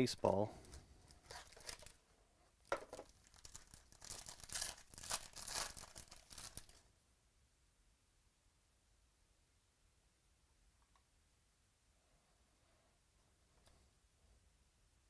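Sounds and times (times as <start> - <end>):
packaging tearing and crinkling: 0.6 - 2.0, 3.0 - 6.8.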